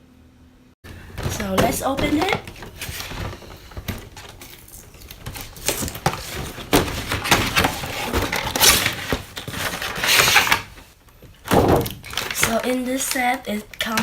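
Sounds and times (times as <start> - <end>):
packaging being opened: 2.2 - 10.8, 11.8 - 13.8.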